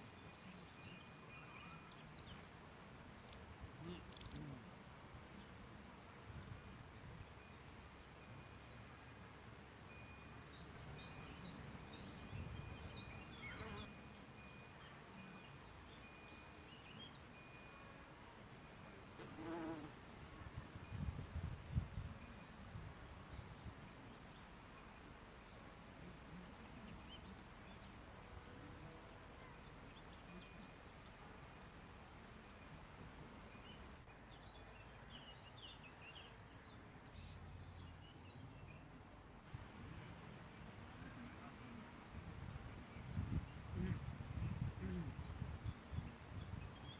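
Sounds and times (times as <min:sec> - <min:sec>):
flying insect buzzing: 0:19.2 - 0:20.0.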